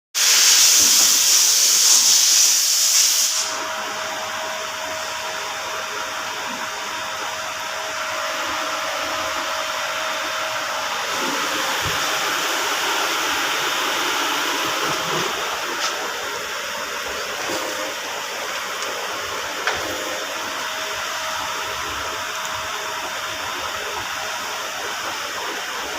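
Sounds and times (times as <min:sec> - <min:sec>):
machine rushing hiss: 0:00.2 - 0:03.7.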